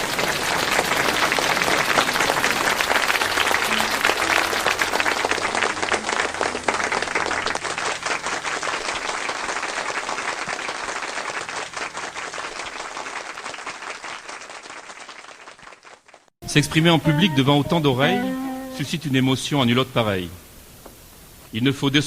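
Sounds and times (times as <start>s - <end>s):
audience applauding: 0.0s - 16.3s.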